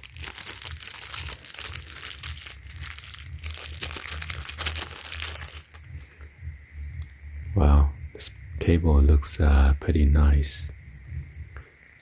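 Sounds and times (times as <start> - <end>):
packaging crinkling: 0.0 - 6.3.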